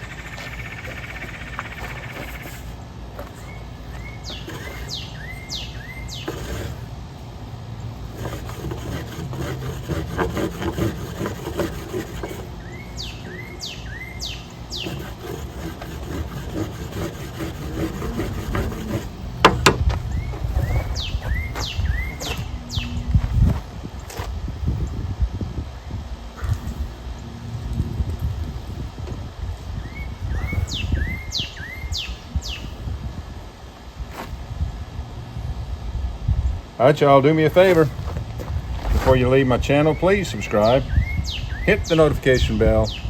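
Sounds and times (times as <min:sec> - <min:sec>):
rustling and scraping: 0:00.0 - 0:24.5, 0:34.1 - 0:34.5, 0:37.5 - 0:40.0
songbird whistling: 0:03.4 - 0:06.3, 0:12.6 - 0:15.0, 0:20.1 - 0:23.1, 0:29.8 - 0:32.7, 0:39.8 - 0:41.9.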